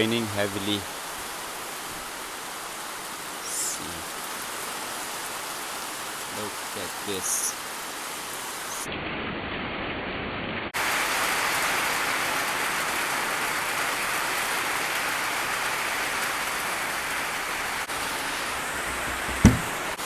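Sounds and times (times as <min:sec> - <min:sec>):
heavy rain pouring: 0:00.0 - 0:08.9, 0:10.8 - 0:20.0.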